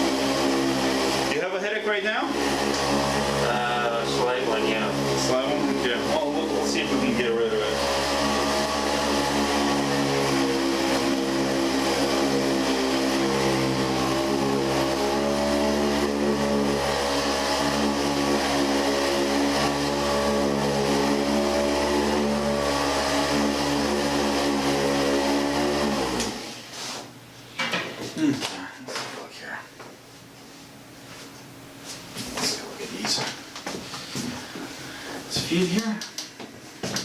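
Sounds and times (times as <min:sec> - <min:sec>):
handheld massager motor hum: 0:02.3 - 0:26.6.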